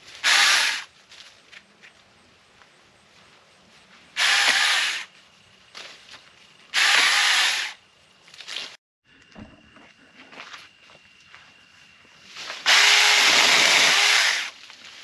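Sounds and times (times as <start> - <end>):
electric chainsaw bursts: 0.2 - 0.9, 4.2 - 5.1, 6.8 - 7.8, 12.6 - 14.5.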